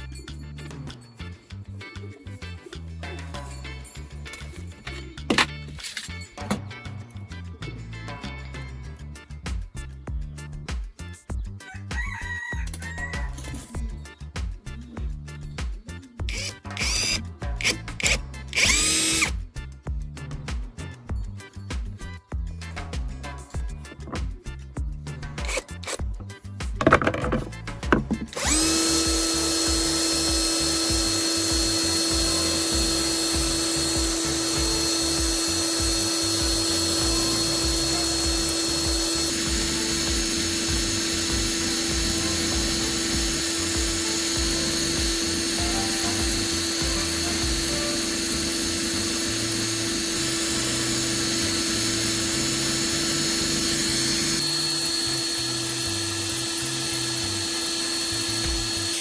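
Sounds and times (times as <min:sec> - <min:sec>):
small electric motor whining: 0:12.6 - 0:14.1, 0:16.2 - 0:19.6, 0:25.4 - 0:26.1, 0:26.8 - 0:59.0.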